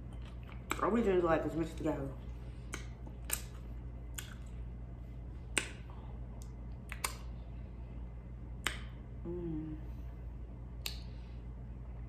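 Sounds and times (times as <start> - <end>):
eating clicks and smacks: 0.0 - 1.0, 2.6 - 4.6, 5.5 - 7.4, 8.6 - 9.1, 10.8 - 11.2
low hum: 0.0 - 12.0.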